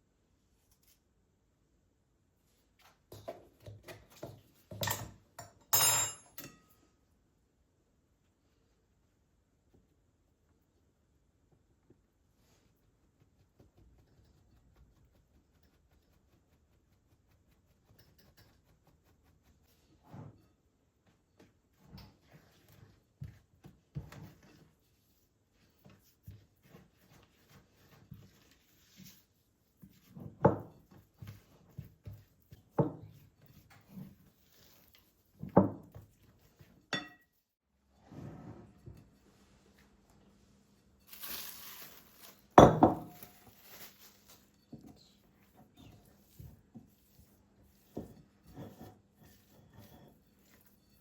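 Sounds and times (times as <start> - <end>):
kitchenware knocking and clattering: 3.2 - 6.7, 36.9 - 37.2, 42.6 - 43.3
ringing clink: 5.8 - 6.6.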